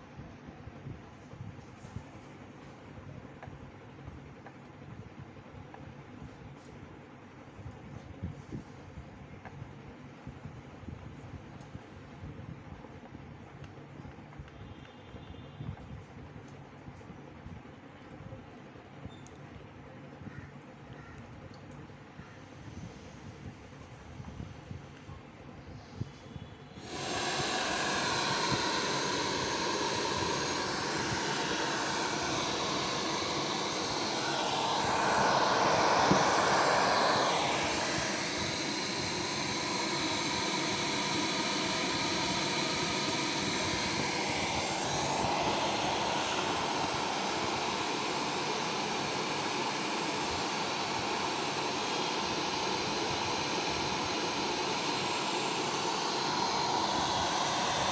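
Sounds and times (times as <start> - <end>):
ventilator blower rushing air: 26.7 - 57.9.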